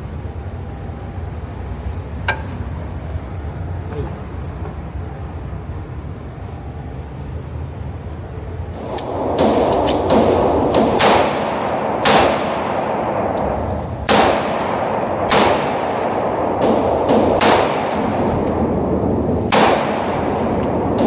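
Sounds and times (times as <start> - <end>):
echoing gunshots: 8.7 - 21.0.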